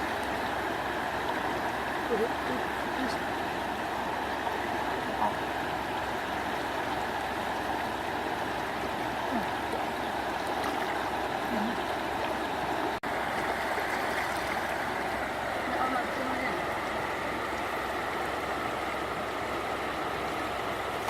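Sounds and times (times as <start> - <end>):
water rushing: 0.0 - 21.0
faint small splashes: 9.3 - 12.4, 13.3 - 15.0.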